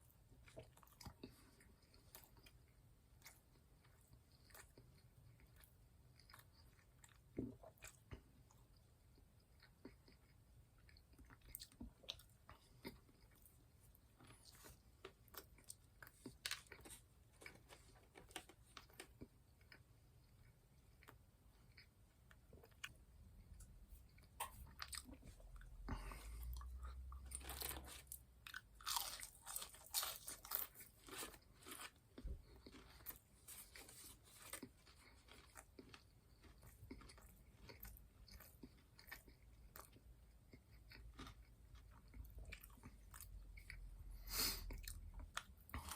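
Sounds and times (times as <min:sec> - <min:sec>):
crunching fried food: 0:09.6 - 0:23.0, 0:24.0 - 0:45.9.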